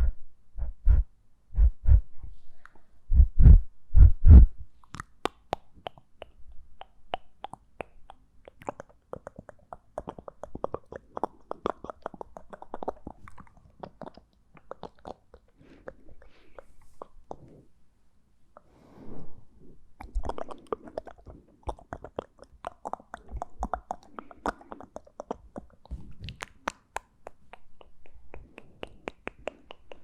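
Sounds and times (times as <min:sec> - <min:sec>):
heavy low thumps: 0:00.0 - 0:02.2, 0:03.1 - 0:04.6
wet mouth clicks and smacks: 0:04.8 - 0:17.5, 0:20.0 - 0:30.0.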